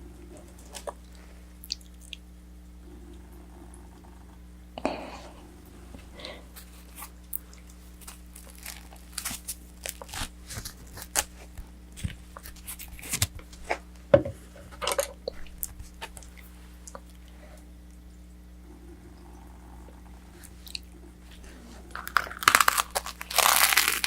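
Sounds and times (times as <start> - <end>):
steady low hum: 0.0 - 24.0
food packaging crinkling and tearing: 6.6 - 13.9, 21.8 - 24.0.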